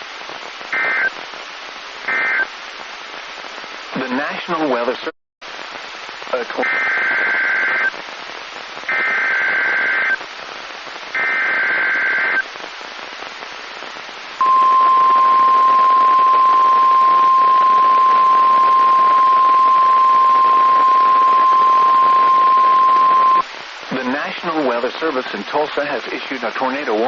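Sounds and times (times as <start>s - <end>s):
radio static: 0.3s - 27.0s
buzzy digital data tones: 14.4s - 23.4s.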